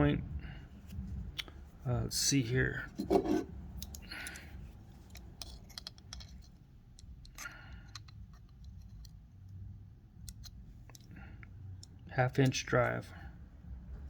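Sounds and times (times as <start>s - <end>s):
metal socket scraping: 3.0s - 9.2s.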